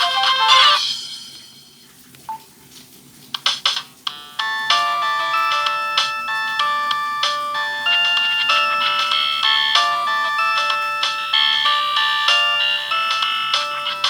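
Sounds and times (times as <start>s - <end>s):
electronic ringtone melody: 0.0s - 0.9s, 4.1s - 14.0s.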